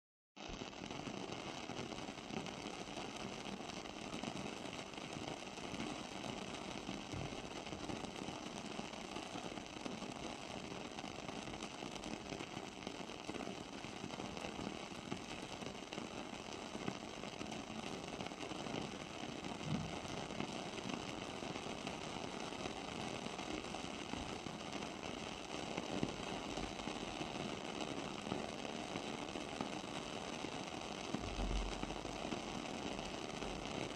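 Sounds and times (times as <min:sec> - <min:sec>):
candle crackling: 0:00.4 - 0:33.9.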